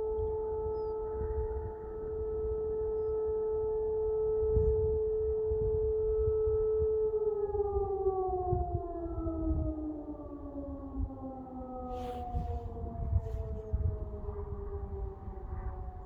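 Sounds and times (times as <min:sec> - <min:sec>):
siren winding down: 0:05.5 - 0:16.0.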